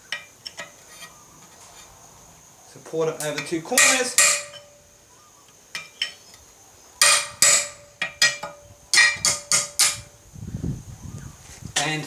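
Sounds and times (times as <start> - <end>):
hammer striking steel punch: 3.8 - 4.7, 7.0 - 10.1.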